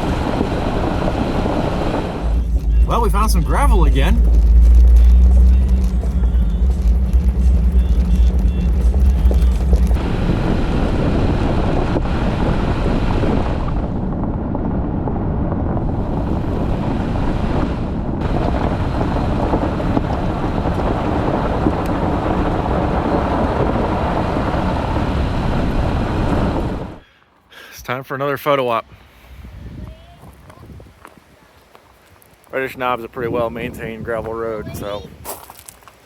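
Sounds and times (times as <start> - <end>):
wind rushing: 0.0 - 27.0
tyres on gravel: 1.9 - 10.0, 29.9 - 33.3, 34.3 - 36.0.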